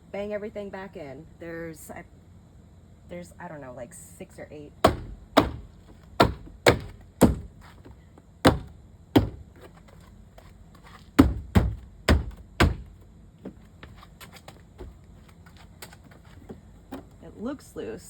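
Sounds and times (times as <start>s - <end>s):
hand thumping car door panel: 4.9s - 7.6s, 8.5s - 9.4s, 11.2s - 13.0s.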